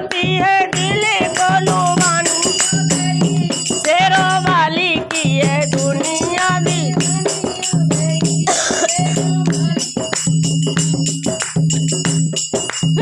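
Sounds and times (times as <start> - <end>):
hand drum fast rhythm: 0.0 - 13.0
tambourine jingling: 0.0 - 13.0.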